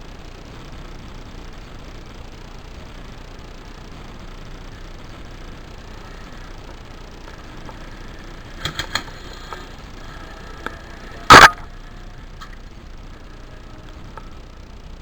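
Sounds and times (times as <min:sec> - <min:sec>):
airsoft gun shots: 0:11.2 - 0:11.8.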